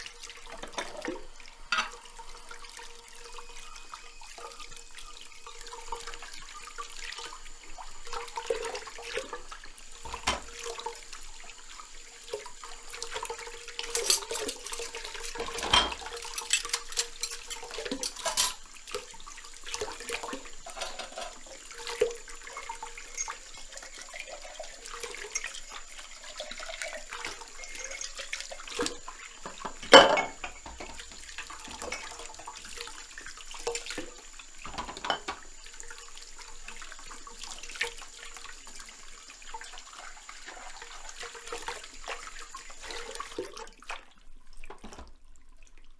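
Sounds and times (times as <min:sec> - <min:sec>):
dishes clinking: 0:01.7 - 0:02.1, 0:10.1 - 0:10.6, 0:13.6 - 0:18.7, 0:19.8 - 0:32.4, 0:34.6 - 0:35.5
water splashing and running: 0:04.6 - 0:45.1.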